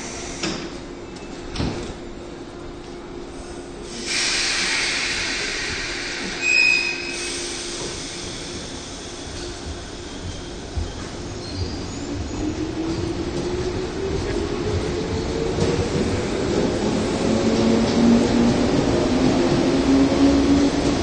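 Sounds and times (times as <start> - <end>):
electric train hum: 0.0 - 21.0
rushing hiss: 3.9 - 9.6
short high squeal: 6.4 - 7.5.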